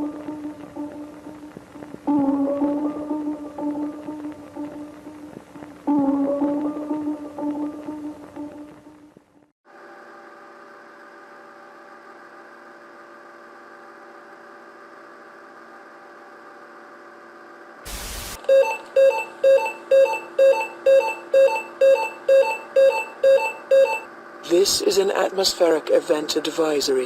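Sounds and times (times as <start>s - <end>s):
electrical hum of held tones: 0.0s - 27.0s
burst of static: 17.9s - 18.4s
alert beeps: 18.4s - 24.1s.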